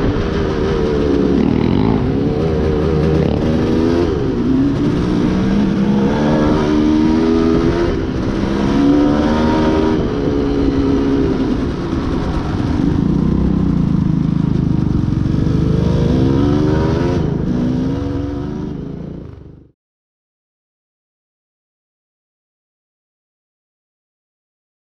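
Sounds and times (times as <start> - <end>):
motorcycle engine revving: 0.0 - 19.7.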